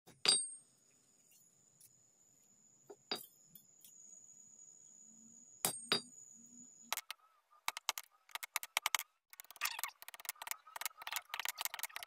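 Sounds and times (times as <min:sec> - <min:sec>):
faint high-pitched ring: 0:00.3 - 0:06.9.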